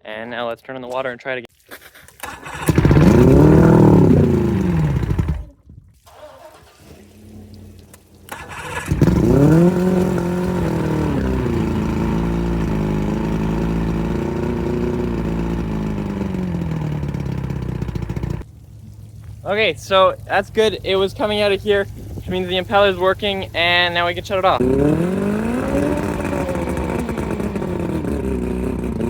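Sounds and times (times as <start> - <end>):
boat engine revving and idling: 2.2 - 5.5, 6.1 - 29.0.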